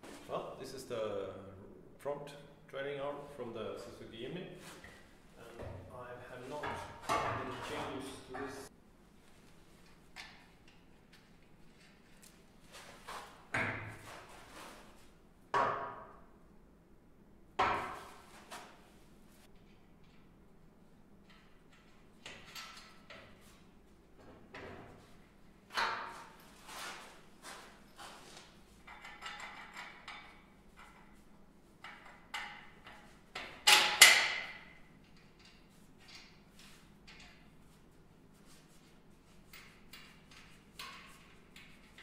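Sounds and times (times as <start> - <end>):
metal parts knocking and clanking: 28.8 - 31.1.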